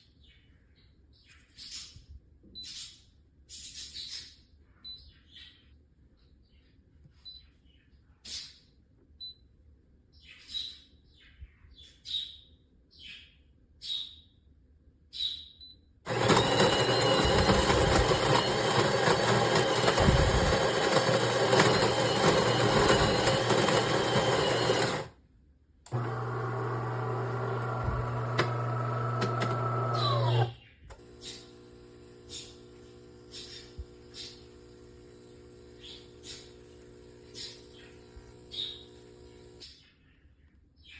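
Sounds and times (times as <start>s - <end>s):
coffee grinder running: 16.1s - 25.1s, 25.9s - 39.7s
espresso machine pump hum: 16.1s - 25.1s, 25.9s - 39.7s.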